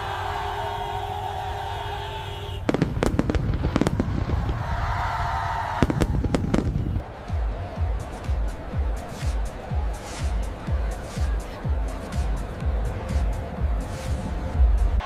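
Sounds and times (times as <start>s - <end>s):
fireworks bangs and crackles: 2.6s - 11.2s.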